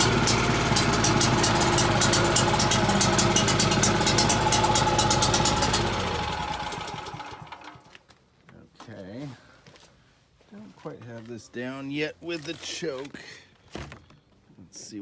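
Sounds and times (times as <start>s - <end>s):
generator engine running: 0.0s - 7.9s.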